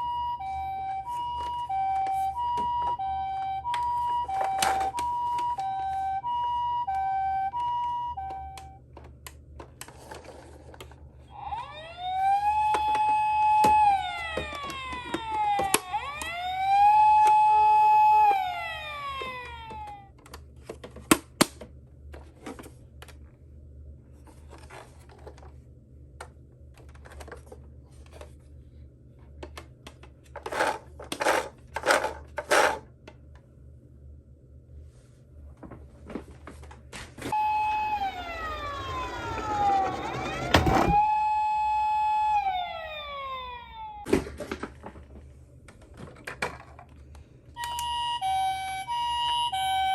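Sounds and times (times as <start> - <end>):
toy electronic siren: 0.0 - 8.8, 11.2 - 20.1, 37.3 - 44.1, 47.6 - 49.9.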